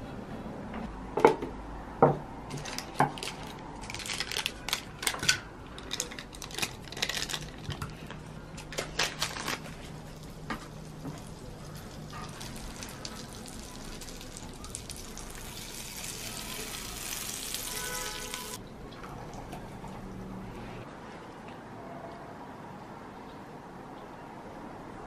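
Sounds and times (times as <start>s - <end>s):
clicks and clatter of objects: 2.5s - 9.7s
small hard objects knocking: 2.5s - 9.7s.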